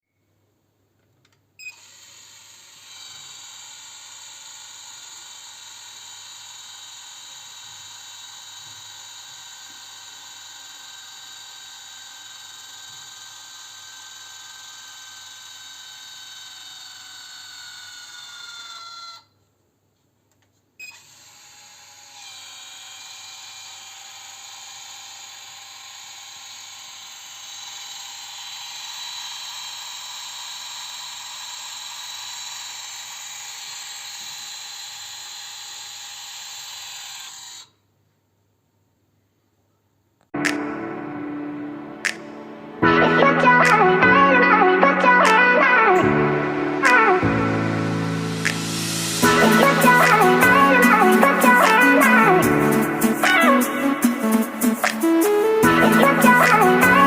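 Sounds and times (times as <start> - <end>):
high-pitched machine whine: 46.0 - 57.0.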